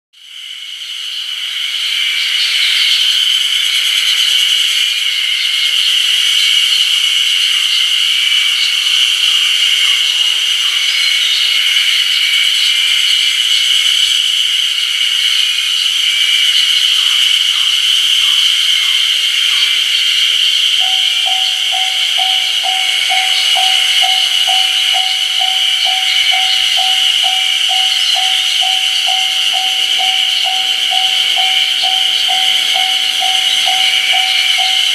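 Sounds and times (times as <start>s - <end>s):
chorus of cicadas calling: 0.2s - 34.9s
level crossing warning bell: 19.4s - 34.9s.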